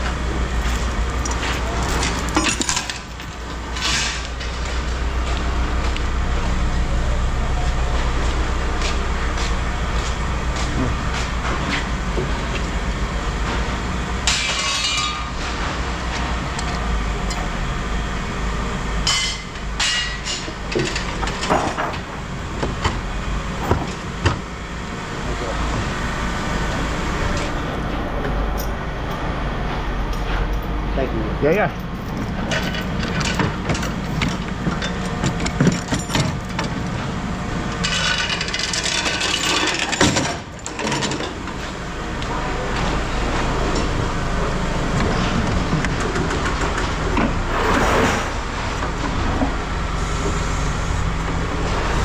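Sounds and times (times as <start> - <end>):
vehicle engine idling: 0.0 - 14.4, 15.2 - 39.4, 48.3 - 52.0
metal clanks and knocks: 0.6 - 5.4, 13.4 - 15.8, 31.8 - 41.7.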